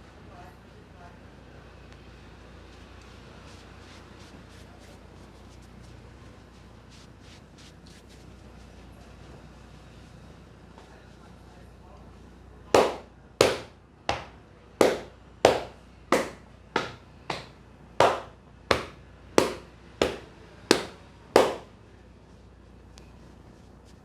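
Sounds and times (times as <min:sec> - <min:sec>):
hands slapping head: 0:12.8 - 0:21.7.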